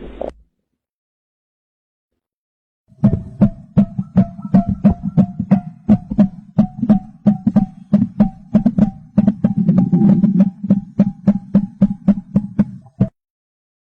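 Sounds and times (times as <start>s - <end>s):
hand drum in steady rhythm: 2.9s - 13.1s.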